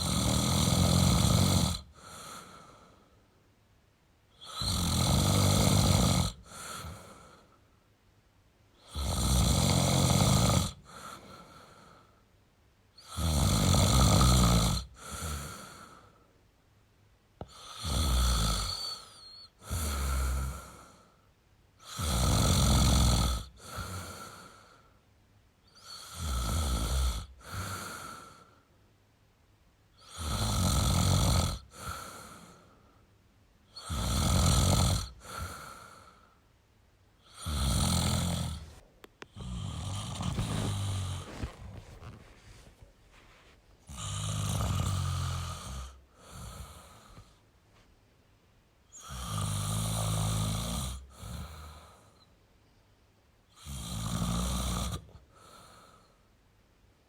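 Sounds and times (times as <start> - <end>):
man snoring: 0.0 - 2.9, 4.4 - 7.5, 8.8 - 12.0, 13.0 - 16.2, 17.4 - 21.1, 21.8 - 24.7, 25.8 - 28.6, 30.0 - 32.6, 33.7 - 36.3, 37.2 - 42.2, 43.9 - 47.4, 48.9 - 52.2, 53.5 - 56.1
soft breath: 1.9 - 3.4, 6.4 - 7.8, 10.8 - 12.3, 14.9 - 16.4, 27.4 - 28.8, 35.1 - 36.5, 38.4 - 48.0, 55.2 - 56.4.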